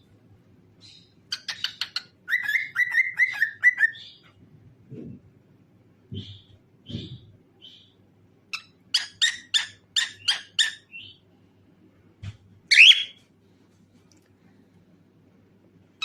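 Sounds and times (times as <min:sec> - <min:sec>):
cockatiel chirping: 0:00.8 - 0:04.3, 0:08.5 - 0:11.2, 0:12.7 - 0:13.2.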